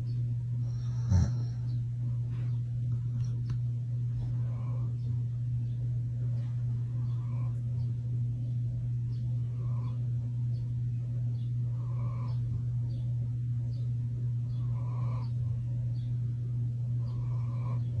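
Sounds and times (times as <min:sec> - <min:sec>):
loud steady low hum: 0:00.0 - 0:18.0
dog snoring: 0:00.6 - 0:01.8, 0:11.7 - 0:12.5, 0:14.5 - 0:15.4, 0:17.0 - 0:18.0.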